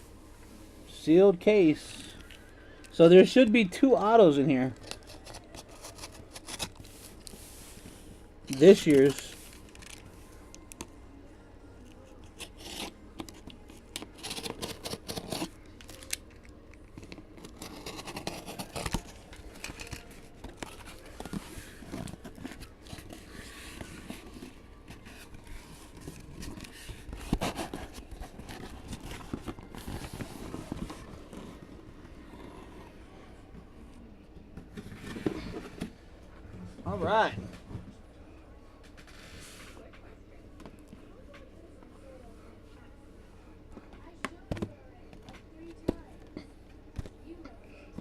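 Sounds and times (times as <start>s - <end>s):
cardboard and plastic tearing: 4.8s - 6.9s, 8.7s - 10.1s, 12.4s - 16.4s, 17.0s - 31.4s.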